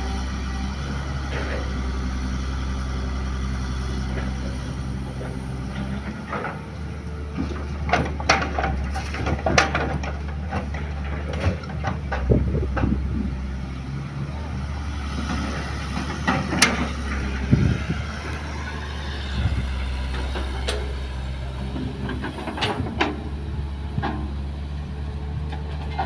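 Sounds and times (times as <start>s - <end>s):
excavator diesel engine running: 0.0s - 26.0s
soil clattering into truck: 7.3s - 13.0s.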